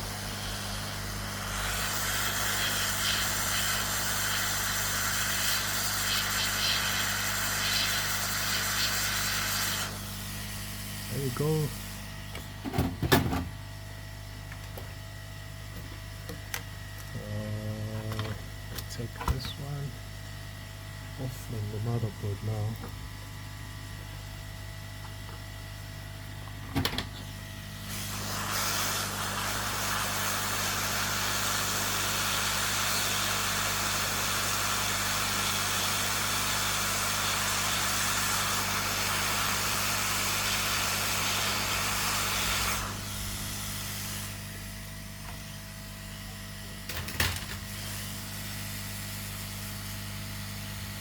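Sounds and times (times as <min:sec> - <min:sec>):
hot air station hissing: 0:00.0 - 0:12.1, 0:27.2 - 0:44.7, 0:47.5 - 0:51.0.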